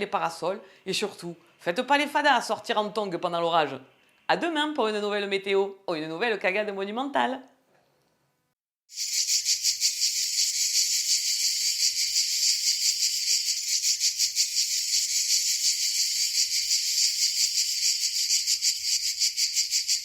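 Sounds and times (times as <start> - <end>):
cicadas singing: 8.9 - 20.0.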